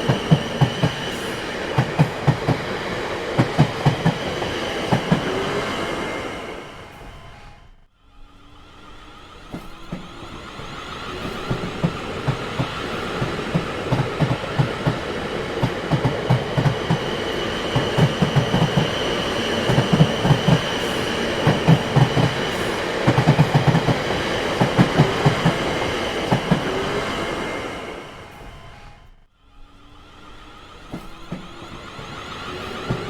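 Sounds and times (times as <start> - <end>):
high squeal of train: 0.0 - 33.0
train wheels clattering over rail joints: 9.4 - 26.8, 30.8 - 33.0.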